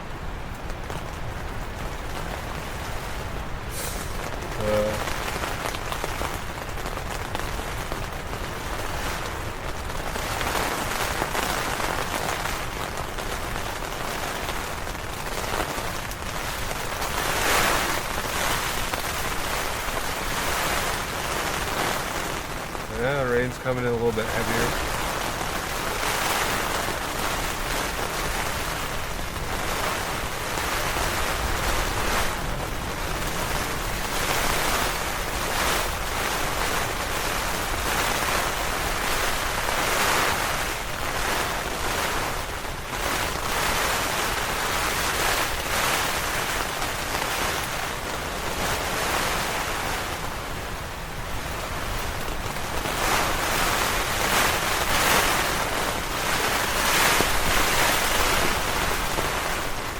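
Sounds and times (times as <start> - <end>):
heavy rain on a tent: 0.0 - 59.9
gusting wind rushing: 1.2 - 6.8, 16.6 - 50.0, 51.3 - 59.9.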